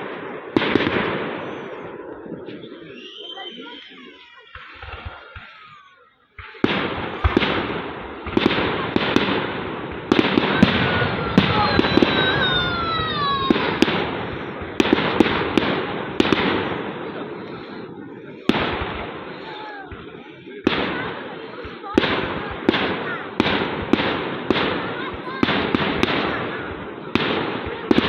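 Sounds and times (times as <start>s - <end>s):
fireworks bangs: 0.0s - 28.0s
fireworks crackling: 0.0s - 28.0s
falling firework whistle: 2.6s - 6.0s, 10.6s - 14.6s.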